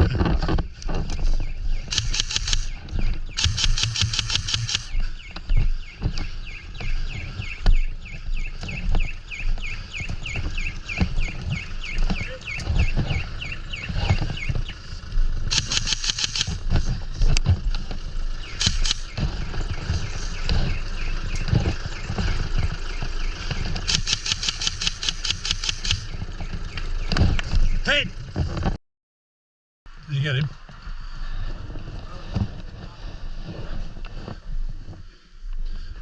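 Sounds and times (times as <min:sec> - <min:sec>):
bird chirping quickly: 0:01.4 - 0:14.9
airsoft gun bursts: 0:01.9 - 0:02.8, 0:03.4 - 0:04.9, 0:15.5 - 0:16.6, 0:18.6 - 0:19.1, 0:23.9 - 0:26.1
wind rumble on microphone: 0:04.9 - 0:15.5.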